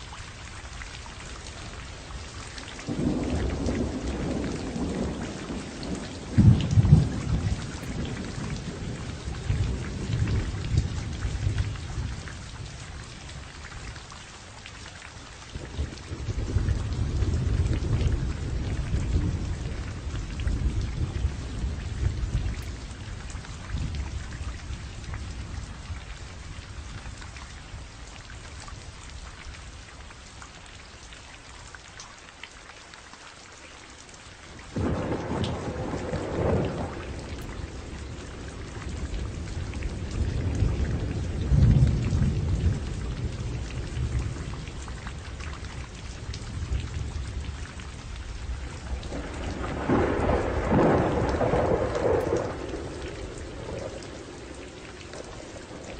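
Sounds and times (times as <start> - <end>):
steady rain falling: 0.0 - 55.9
thunder rumbling: 2.7 - 13.4, 15.6 - 26.0, 34.7 - 55.9.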